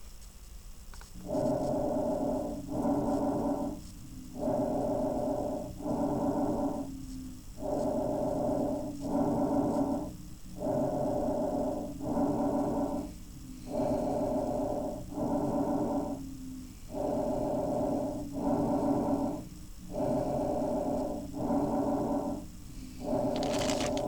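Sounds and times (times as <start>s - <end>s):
breathing in and out: 1.2s - 24.0s.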